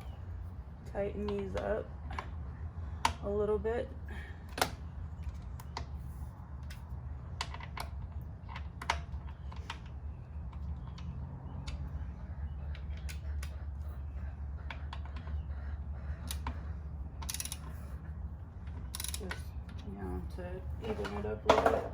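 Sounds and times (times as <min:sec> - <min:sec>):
low hum: 0:00.0 - 0:21.9
wrench metallic clicks and taps: 0:16.3 - 0:16.6, 0:17.2 - 0:17.8, 0:18.6 - 0:19.8.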